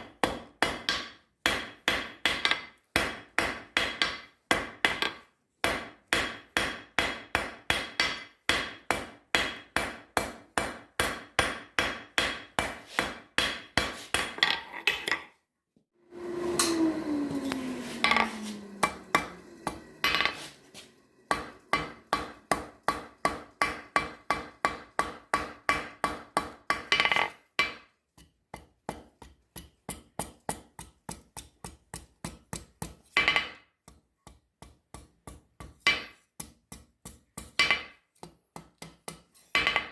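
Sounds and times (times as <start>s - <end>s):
hammer striking steel on anvil: 0.0s - 14.5s, 16.6s - 16.8s, 18.0s - 20.5s, 21.2s - 27.8s
falling hum: 16.0s - 21.7s.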